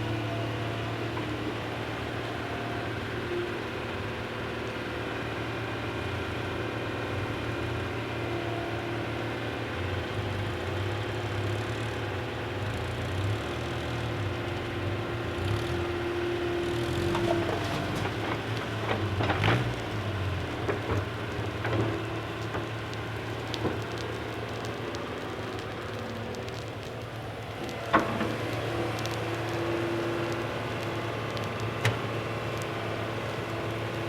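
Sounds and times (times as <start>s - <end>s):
heavy vehicle engine running: 9.1s - 34.0s.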